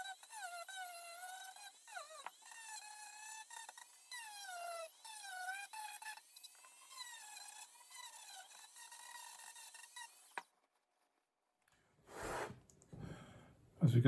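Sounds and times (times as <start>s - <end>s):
rotary tool whining: 0.0s - 10.5s.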